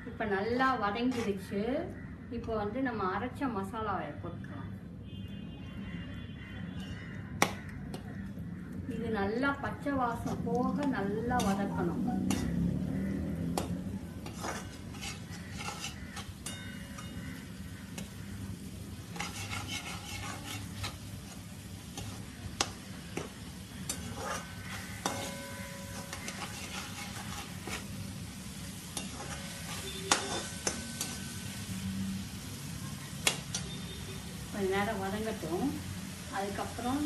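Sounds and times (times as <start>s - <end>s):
paste sizzling in oil: 10.1s - 37.0s.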